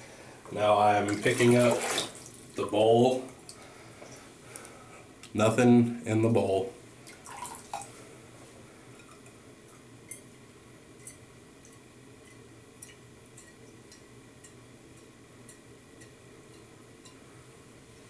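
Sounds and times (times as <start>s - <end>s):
faint steady hum: 0.0s - 18.0s
water dripping into a bowl: 7.1s - 7.9s, 11.0s - 17.2s.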